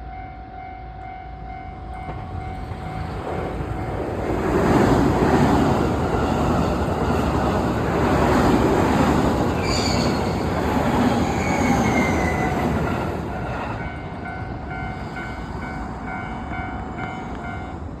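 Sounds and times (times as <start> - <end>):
train braking: 1.0 - 17.9
high brake squeals: 9.5 - 12.7.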